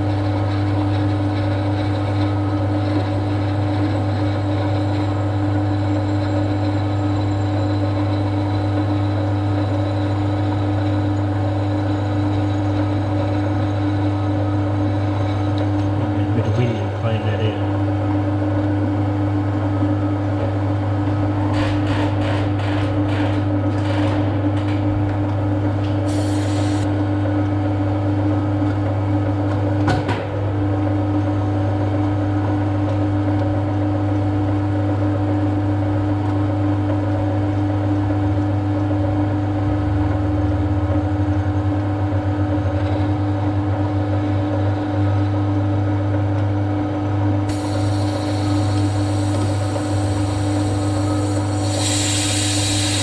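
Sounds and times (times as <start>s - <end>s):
machine tool motor humming: 26.1s - 26.9s, 47.5s - 53.0s.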